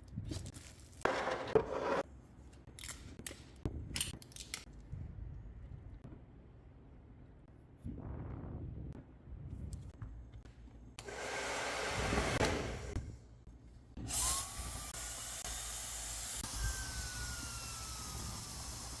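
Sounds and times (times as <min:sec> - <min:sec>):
hair dryer blowing: 0:11.0 - 0:13.0
motor whine: 0:14.1 - 0:19.0.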